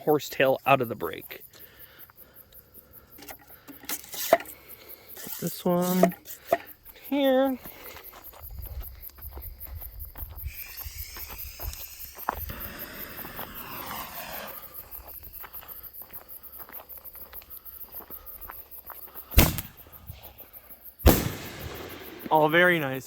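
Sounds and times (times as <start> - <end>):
falling whistle-like sweep: 10.5 - 14.9
firework shell thump: 19.4 - 20.2.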